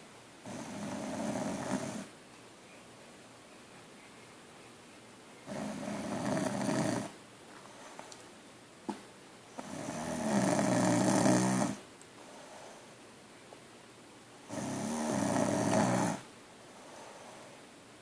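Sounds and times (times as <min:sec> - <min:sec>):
quiet breathing: 0:00.4 - 0:08.4, 0:09.5 - 0:13.2, 0:14.4 - 0:17.9
woman snoring: 0:00.5 - 0:02.1, 0:05.5 - 0:07.2, 0:09.6 - 0:11.8, 0:14.5 - 0:16.3.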